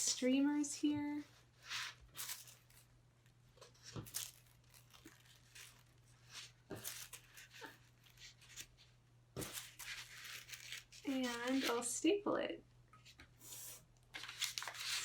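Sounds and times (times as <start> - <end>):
paper rustling and crinkling: 1.4 - 2.9, 3.5 - 11.9, 13.0 - 15.0.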